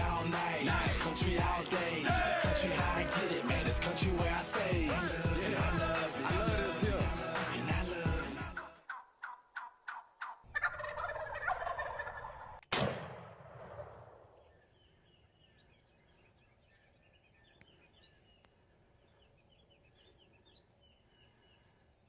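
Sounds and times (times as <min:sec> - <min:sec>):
turkey gobbling: 0:08.5 - 0:12.6
loud bang: 0:12.7 - 0:14.3
faint songbird chirps: 0:14.3 - 0:22.0.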